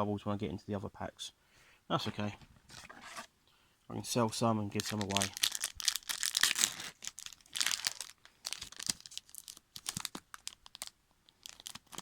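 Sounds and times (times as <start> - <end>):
wrapper tearing and crinkling: 4.8 - 12.0.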